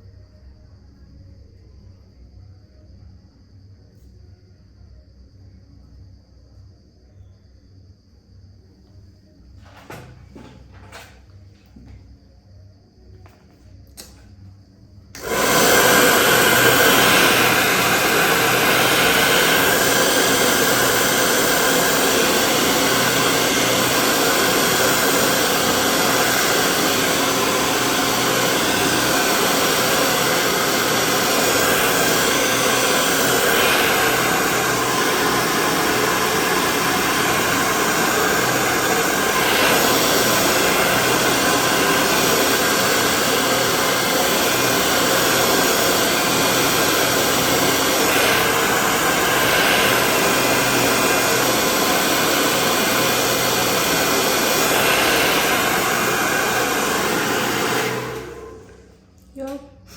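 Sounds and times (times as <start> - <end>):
hair dryer blowing: 15.2 - 58.9.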